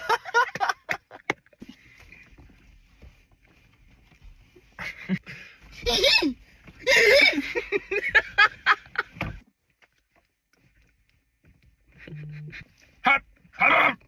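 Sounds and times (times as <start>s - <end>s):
person making silly noises: 12.0s - 12.7s.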